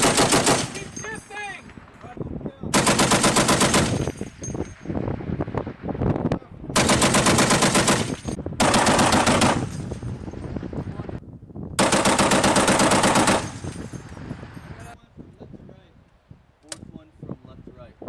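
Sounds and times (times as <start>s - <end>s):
machine gun bursts: 0.0s - 1.0s, 2.7s - 4.1s, 6.8s - 9.8s, 11.8s - 13.6s.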